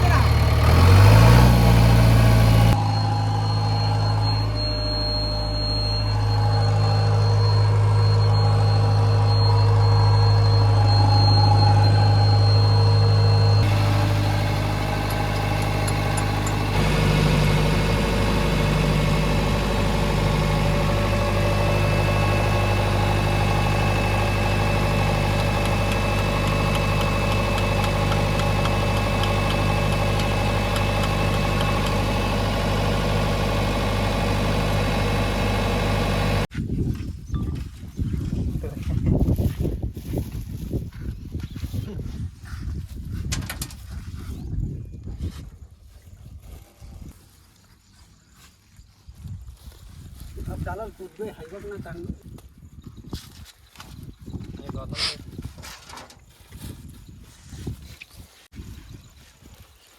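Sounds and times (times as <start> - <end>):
heavy diesel engine running: 0.0 - 36.5.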